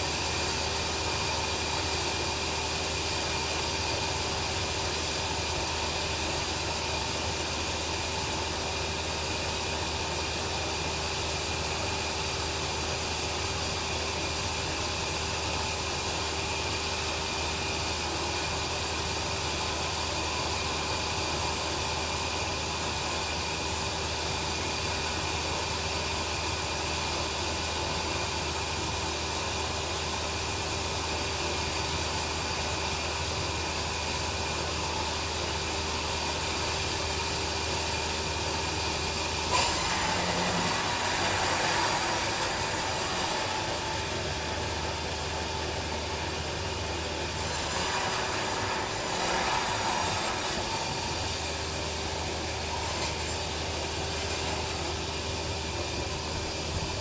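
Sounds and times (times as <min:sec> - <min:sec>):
bandsaw sawmill hum: 0:00.0 - 0:57.0
saw blade cutting log: 0:34.8 - 0:56.8.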